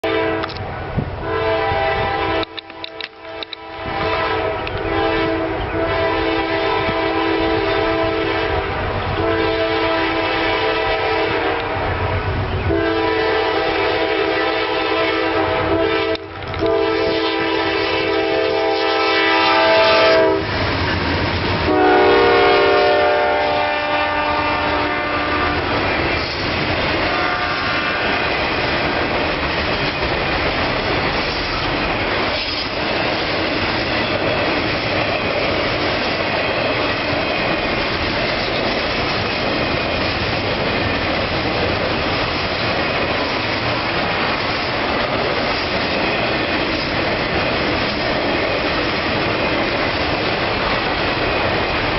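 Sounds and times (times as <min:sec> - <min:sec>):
locomotive air horn blasts: 0:00.0 - 0:00.6, 0:01.2 - 0:12.1, 0:12.7 - 0:20.5, 0:21.6 - 0:25.7, 0:27.0 - 0:28.4
freight train rumbling past: 0:00.0 - 0:51.9.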